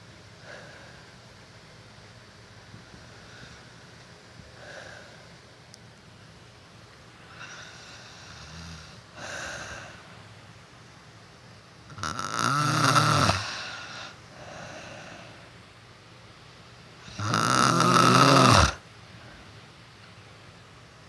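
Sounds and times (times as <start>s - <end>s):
man snoring loudly: 7.4s - 9.8s, 11.9s - 13.9s, 17.1s - 18.8s.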